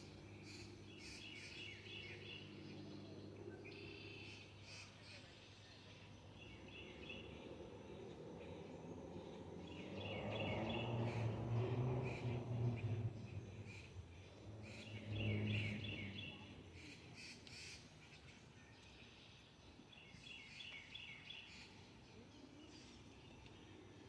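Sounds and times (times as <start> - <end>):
steady low hum: 0.0 - 18.3
birds chirping: 0.0 - 23.8.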